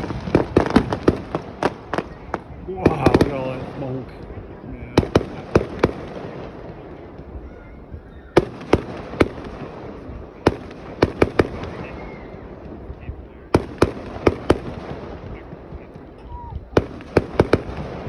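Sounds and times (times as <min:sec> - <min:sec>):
fireworks bangs: 0:00.0 - 0:18.0.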